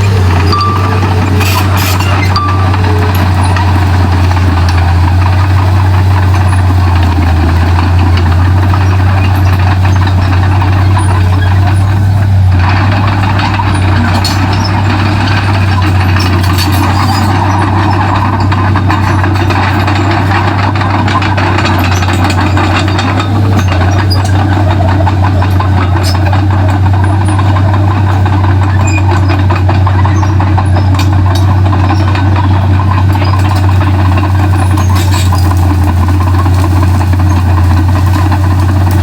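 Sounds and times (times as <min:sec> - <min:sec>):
bulldozer diesel engine running: 0:00.0 - 0:39.0.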